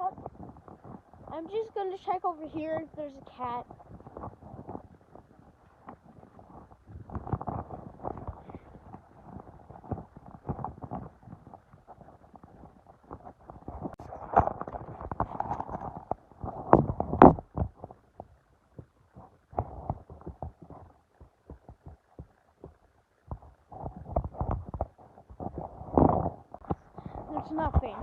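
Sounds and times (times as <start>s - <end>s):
muffled thumps: 3.6s - 28.0s.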